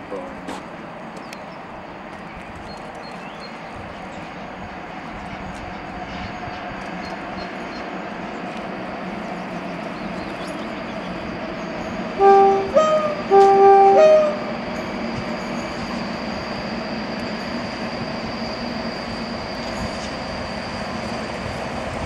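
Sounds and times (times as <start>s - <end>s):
train running noise: 0.0s - 22.0s
locomotive horn blasts: 12.2s - 14.6s.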